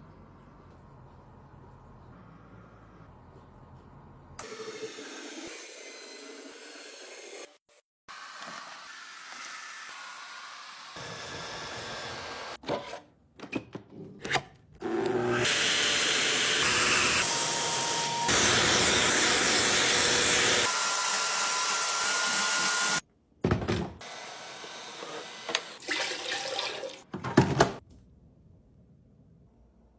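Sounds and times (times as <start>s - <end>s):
robot vacuum cleaner running: 14.8s - 23.0s.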